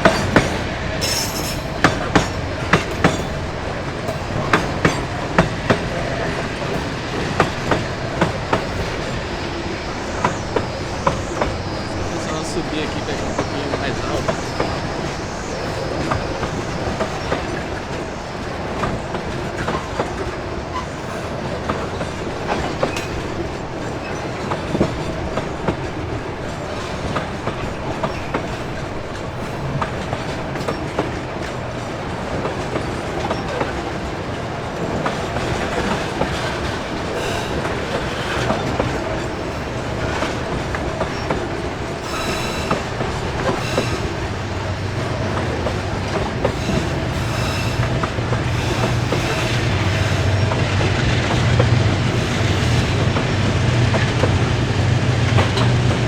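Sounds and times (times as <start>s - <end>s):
high wheel squeal: 0.0s - 17.9s, 35.6s - 51.5s
train wheels clacking on rail joints: 0.0s - 56.0s.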